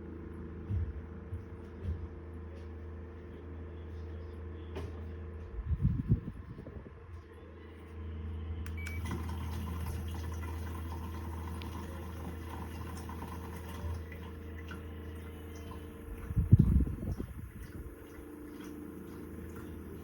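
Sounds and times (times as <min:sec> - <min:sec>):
small fan humming: 0:05.6 - 0:20.0.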